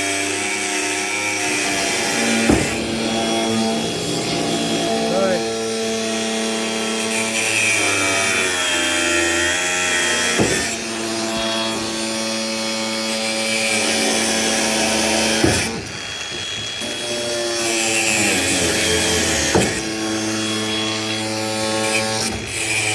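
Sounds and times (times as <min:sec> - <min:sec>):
power saw cutting: 0:00.0 - 0:22.9
sharp knocks: 0:01.5 - 0:05.1.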